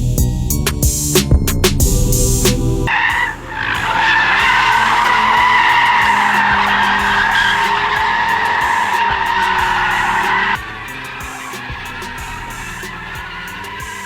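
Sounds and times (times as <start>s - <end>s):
faint car engine: 1.5s - 14.0s
tyres squealing: 2.9s - 14.0s.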